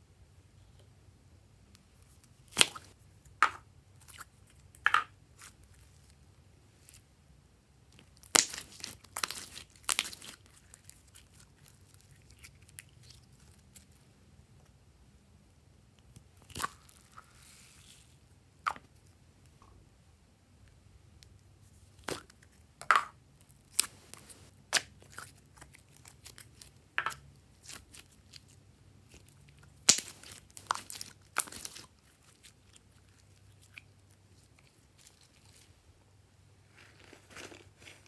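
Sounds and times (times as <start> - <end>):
slime sticky pops and crackles: 8.2 - 10.4, 29.8 - 31.8.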